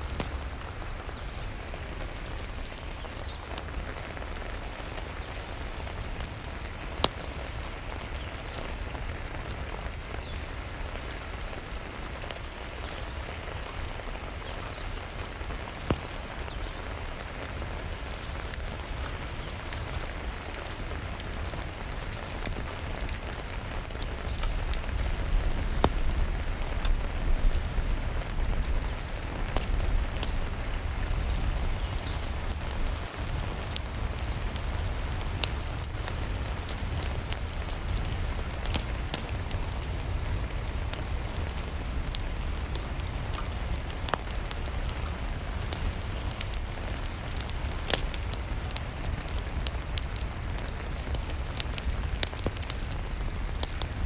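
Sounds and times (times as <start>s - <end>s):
rain pattering: 0.0s - 54.0s
wood fire crackling and popping: 0.0s - 54.0s.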